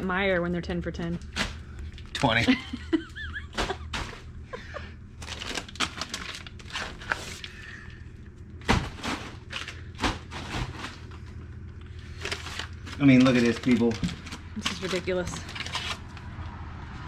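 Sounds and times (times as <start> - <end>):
steady low hum: 0.0 - 17.0
food packages knocking and rustling: 3.2 - 4.4, 5.2 - 7.6, 8.6 - 11.4, 12.1 - 16.1.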